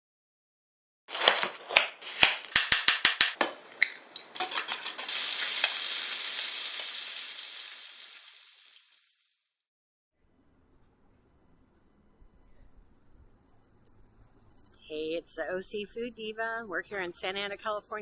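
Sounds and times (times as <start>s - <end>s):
food frying in hot oil: 3.6s - 9.2s.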